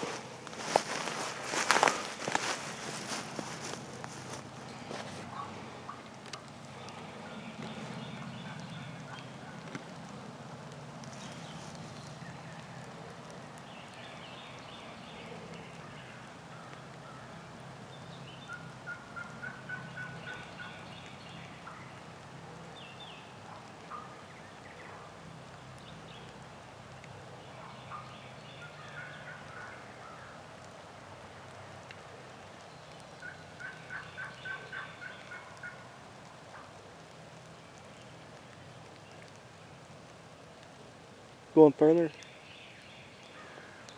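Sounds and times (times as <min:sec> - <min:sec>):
wild turkeys calling: 0:00.0 - 0:09.9, 0:18.2 - 0:25.2, 0:27.4 - 0:30.6, 0:31.9 - 0:39.5.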